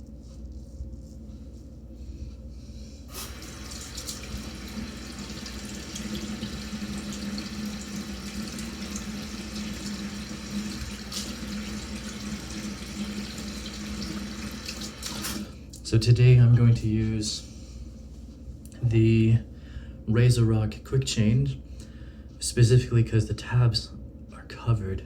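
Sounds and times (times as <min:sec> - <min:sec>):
water running into basin: 0:03.1 - 0:15.6.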